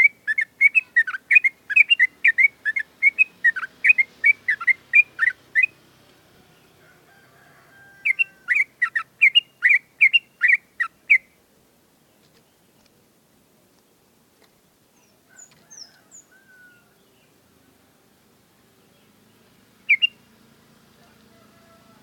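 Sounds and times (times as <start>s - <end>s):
bulbul whistled song: 0.0s - 5.8s, 8.0s - 11.4s, 19.9s - 20.3s.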